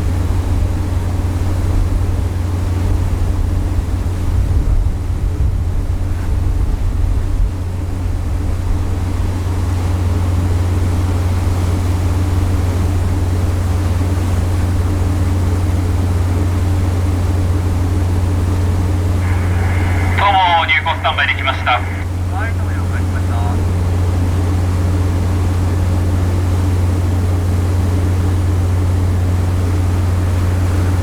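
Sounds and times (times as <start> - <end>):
ship engines droning: 7.6 - 31.0
rushing water: 19.2 - 24.8.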